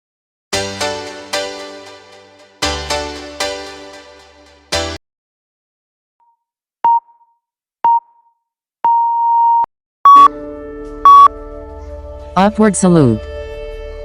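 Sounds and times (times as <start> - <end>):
interval timer beeps: 6.2 - 7.3, 7.9 - 8.3, 8.9 - 10.3, 11.1 - 11.3
soft background music: 10.2 - 14.0.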